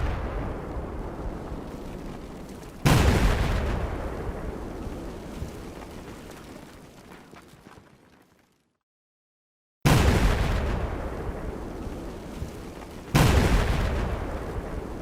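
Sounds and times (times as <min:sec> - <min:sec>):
explosion: 0:00.0 - 0:06.5, 0:09.9 - 0:15.0.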